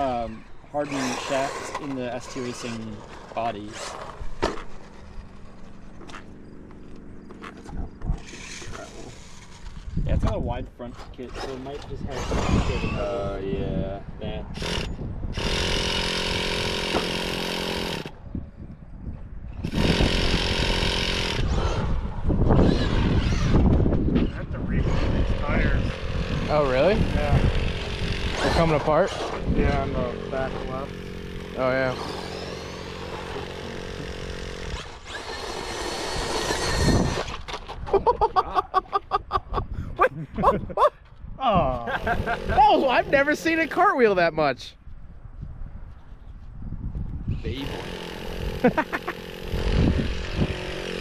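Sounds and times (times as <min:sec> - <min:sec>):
rc car nitro engine revving: 0:00.8 - 0:05.7, 0:08.2 - 0:09.9, 0:11.3 - 0:13.3, 0:19.6 - 0:23.8, 0:24.8 - 0:37.8, 0:42.0 - 0:44.0, 0:47.5 - 0:51.0.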